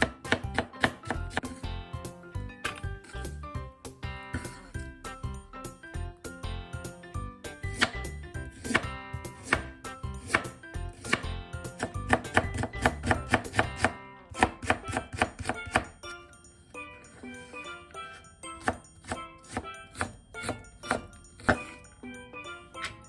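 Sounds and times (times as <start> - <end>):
knife chopping on cutting board: 0.0 - 1.7, 2.6 - 3.4, 7.5 - 16.0, 18.6 - 21.8
background music: 0.0 - 23.0.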